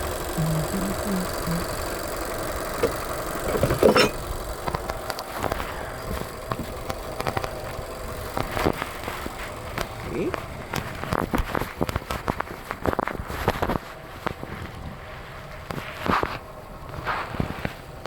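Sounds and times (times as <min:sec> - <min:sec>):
car engine idling: 0:00.0 - 0:18.0
metal clank: 0:02.8 - 0:04.2.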